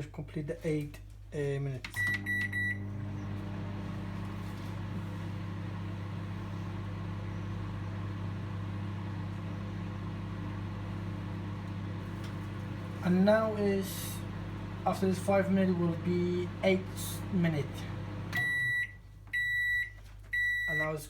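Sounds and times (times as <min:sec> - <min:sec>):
microwave humming: 0:01.9 - 0:21.0
microwave keypad beeping: 0:02.0 - 0:03.0, 0:18.3 - 0:21.0.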